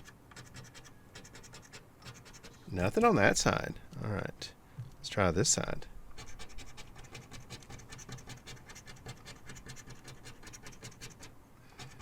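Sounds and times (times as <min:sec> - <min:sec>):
lottery ticket being scratched: 0:00.0 - 0:03.3, 0:06.2 - 0:12.0.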